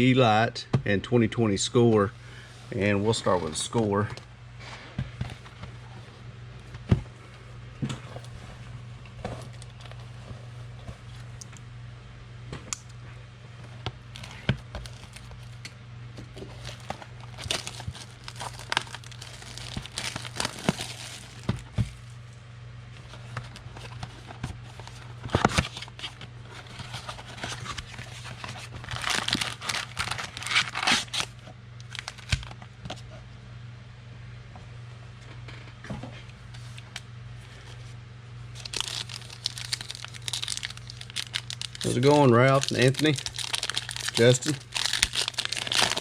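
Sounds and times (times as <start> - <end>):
low electrical hum: 0.0 - 46.0
card pack wrappers tearing and crinkling: 14.1 - 15.6, 16.4 - 22.0, 23.1 - 32.6, 38.6 - 46.0.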